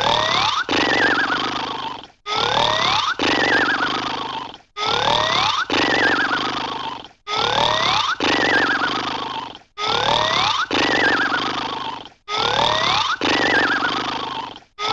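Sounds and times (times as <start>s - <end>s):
rough growling noise: 0.0s - 14.9s
cartoon whistle glides: 0.8s - 1.7s, 3.0s - 4.1s, 5.5s - 6.6s, 8.4s - 9.2s, 10.6s - 11.6s, 13.0s - 14.2s.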